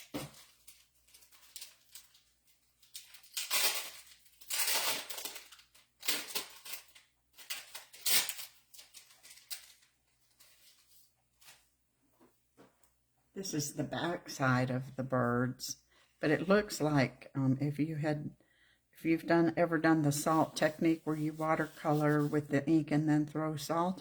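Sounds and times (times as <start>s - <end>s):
paper rustling and shuffling: 0.0s - 12.9s, 20.3s - 22.5s.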